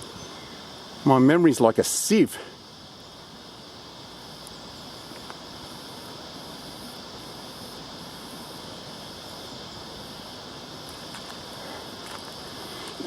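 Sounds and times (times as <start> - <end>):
faint pulsing high-pitched buzzing: 0.0 - 13.0
outdoor background noise: 0.0 - 13.0.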